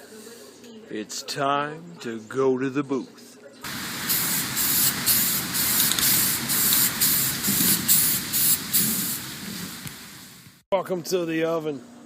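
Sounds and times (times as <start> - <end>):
paint spray hissing: 3.7 - 10.6.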